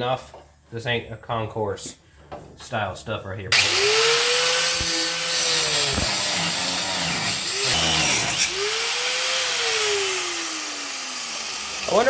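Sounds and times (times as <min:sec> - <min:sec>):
angle grinder grinding metal: 0:03.5 - 0:12.0.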